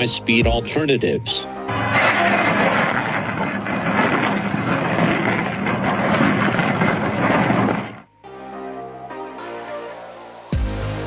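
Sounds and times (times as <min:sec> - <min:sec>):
wood grinding and crushing: 0:01.8 - 0:08.1.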